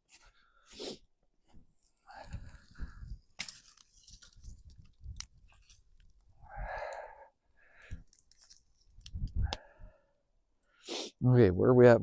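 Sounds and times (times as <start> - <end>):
breathy noise: 2.0 - 3.9, 6.3 - 8.6.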